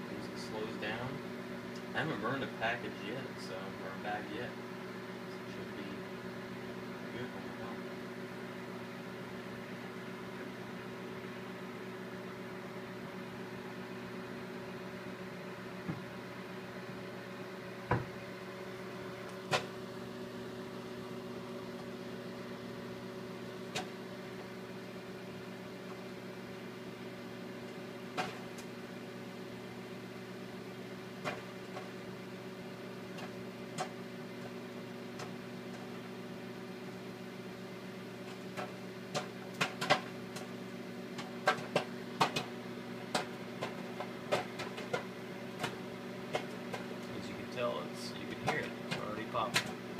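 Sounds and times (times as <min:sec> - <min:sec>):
microwave oven humming: 0:00.0 - 0:49.9
popcorn popping: 0:17.8 - 0:49.9.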